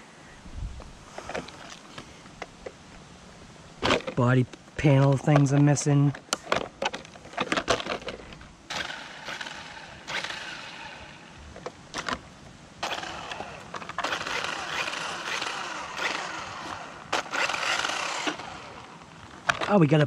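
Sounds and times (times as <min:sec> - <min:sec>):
rolling wheel noise: 0:03.8 - 0:20.0
toy car electric motor whining: 0:08.7 - 0:11.4, 0:12.8 - 0:19.0.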